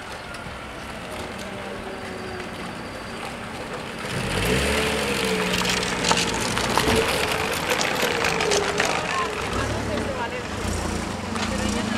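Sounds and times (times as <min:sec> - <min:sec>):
motor vehicle passing: 0:03.1 - 0:11.9.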